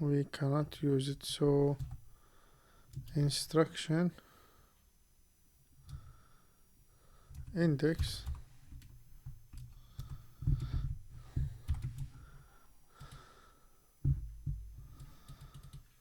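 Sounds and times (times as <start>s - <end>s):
typing on computer keyboard: 7.3s - 12.2s, 14.9s - 15.9s.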